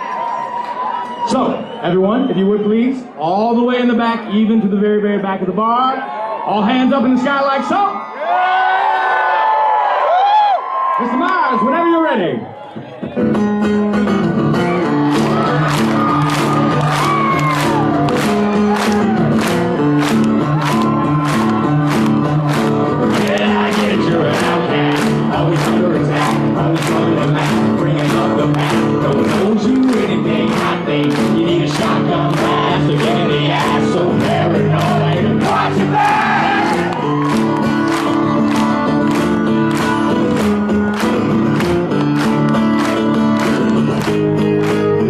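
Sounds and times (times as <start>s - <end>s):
acoustic guitar chord riff: 13.2s - 45.0s
crowd clapping in time: 14.7s - 45.0s
audience singing and shouting: 15.0s - 40.4s.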